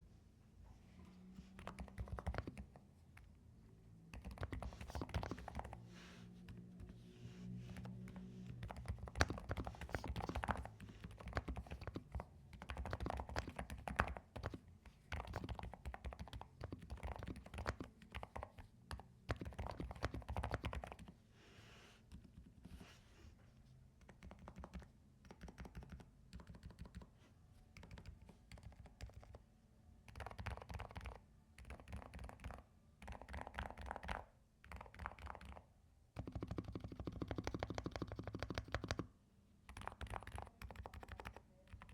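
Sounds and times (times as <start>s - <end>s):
typing on mechanical keyboard: 1.6s - 2.8s, 4.1s - 5.8s, 7.8s - 21.1s, 24.0s - 27.1s, 27.8s - 29.4s, 30.1s - 39.1s, 39.7s - 41.9s.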